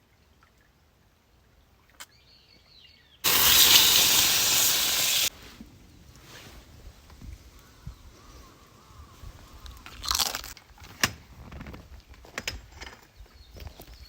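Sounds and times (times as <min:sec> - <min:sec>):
loud steady hiss: 0:03.2 - 0:05.3.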